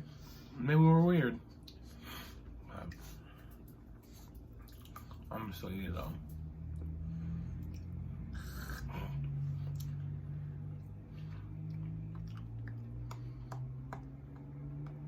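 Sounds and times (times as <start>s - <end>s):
steady low hum: 0.0s - 15.0s
person chewing candy: 11.2s - 15.0s.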